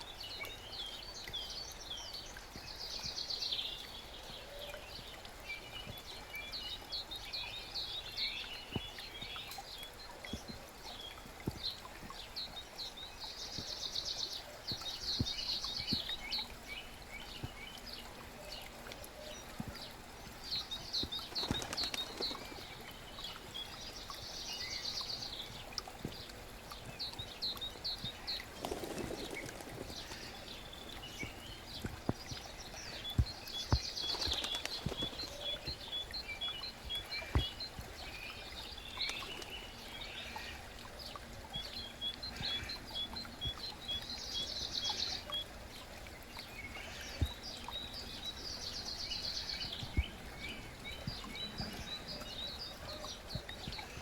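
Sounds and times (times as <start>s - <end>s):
songbirds trilling and chirping: 0.0s - 54.0s.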